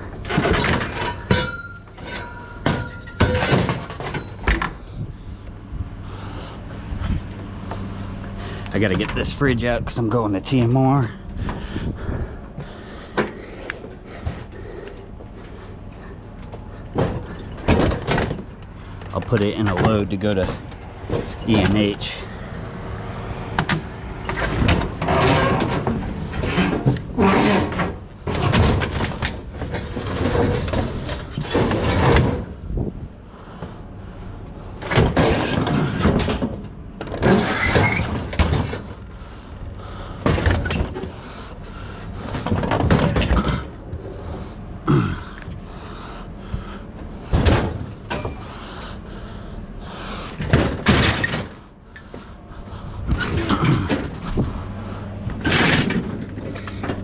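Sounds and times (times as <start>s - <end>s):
refrigerator scraping and banging: 0.0s - 5.1s, 15.4s - 22.4s, 23.5s - 33.1s, 34.7s - 57.0s.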